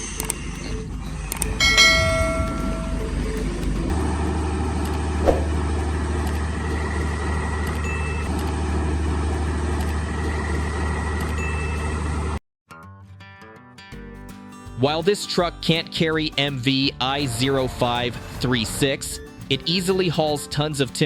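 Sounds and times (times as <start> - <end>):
truck diesel engine droning: 0.0 - 12.4
held multi-pitched tone: 1.6 - 3.9.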